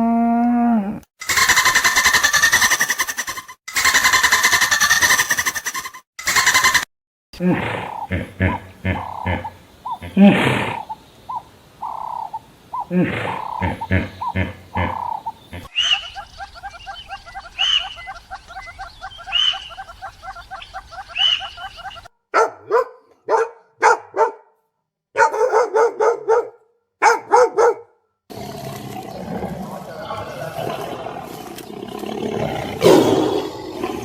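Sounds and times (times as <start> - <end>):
frogs croaking trill: 7.4 - 22.1
higher frog chirp: 7.4 - 22.1
dog barking: 22.3 - 28.0.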